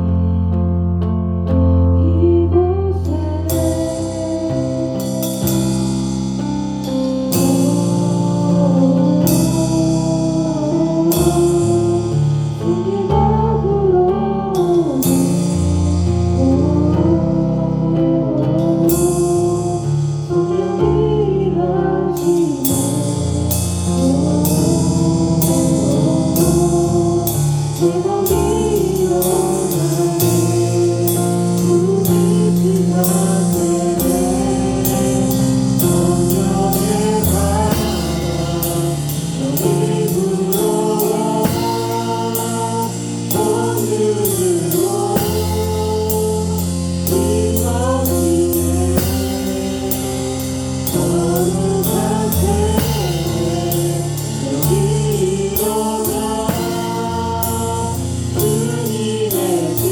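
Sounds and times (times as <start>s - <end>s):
bass: 0.0s - 59.9s
keyboard chords: 0.0s - 59.9s
drum kit beat: 3.5s - 10.0s, 22.3s - 59.9s
voices singing: 16.5s - 59.9s.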